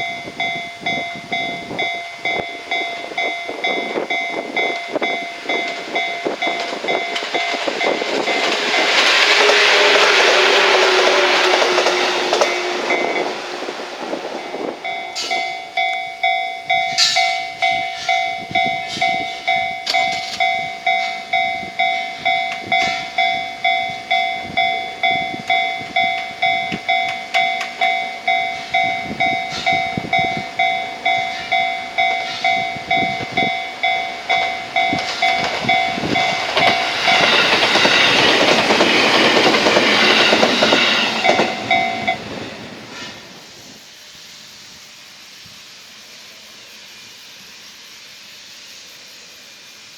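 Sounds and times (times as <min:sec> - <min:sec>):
level crossing bell ringing: 0:00.0 - 0:08.6, 0:14.3 - 0:37.9, 0:41.2 - 0:42.3
train passing: 0:00.0 - 0:49.9.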